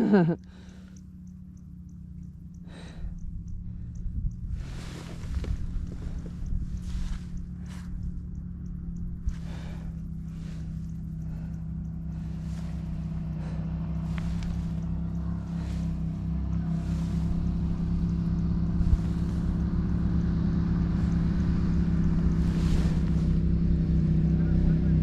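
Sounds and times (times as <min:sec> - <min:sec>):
motorcycle engine running: 0:00.0 - 0:25.0
wind noise on microphone: 0:03.6 - 0:08.3.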